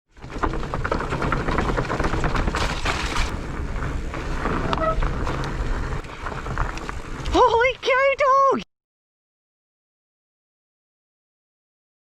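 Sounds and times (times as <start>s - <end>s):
mountain bike rattling on rough trail: 0.1s - 8.4s
wind rumble on microphone: 0.2s - 7.8s.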